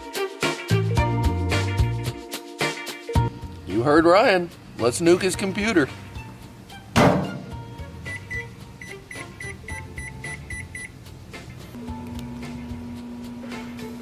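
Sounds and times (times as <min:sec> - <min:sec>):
thump: 0:07.0 - 0:07.6
keypad beeps: 0:08.1 - 0:10.9
microwave oven hum: 0:11.7 - 0:14.0.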